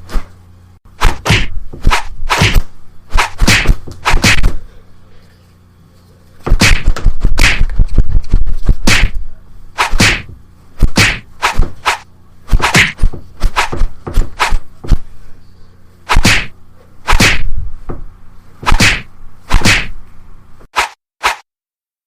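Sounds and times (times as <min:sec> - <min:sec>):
sharp whacking impacts: 0:00.9 - 0:04.6, 0:06.4 - 0:09.2, 0:09.8 - 0:15.0, 0:16.1 - 0:17.6, 0:18.6 - 0:20.0, 0:20.7 - 0:21.4.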